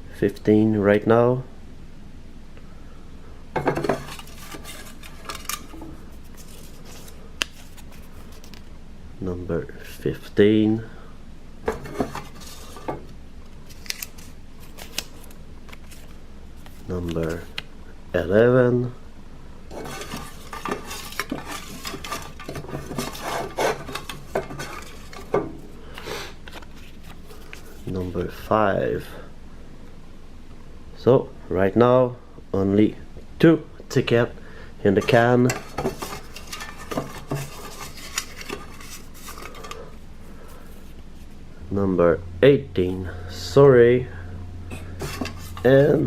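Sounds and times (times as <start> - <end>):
paper tickets rustling in a can: 3.8 - 8.7, 11.7 - 17.5, 19.7 - 25.4, 35.0 - 39.9, 44.8 - 46.0.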